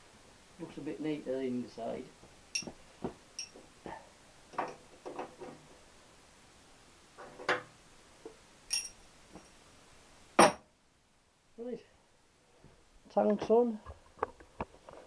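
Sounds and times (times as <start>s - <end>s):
metal tools clicking and clinking: 3.4s - 3.6s, 8.7s - 9.0s.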